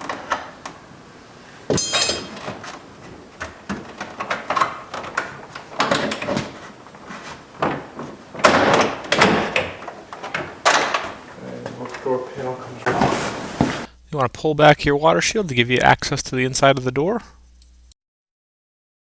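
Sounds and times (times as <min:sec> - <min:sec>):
panel rattling and scraping: 0:00.0 - 0:13.9.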